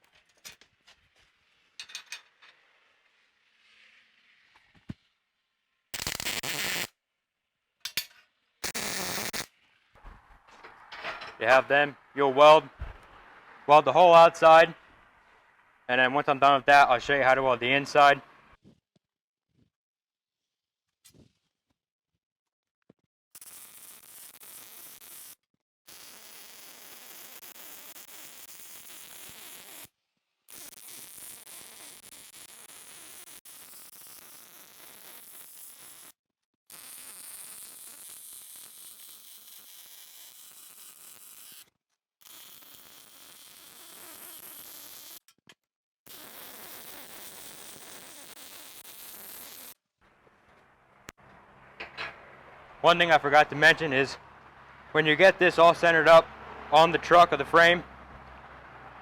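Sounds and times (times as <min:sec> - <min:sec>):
welding arc noise: 0:06.0 - 0:06.9, 0:08.6 - 0:15.4, 0:23.4 - 0:29.9, 0:30.5 - 0:45.2, 0:46.1 - 0:54.9.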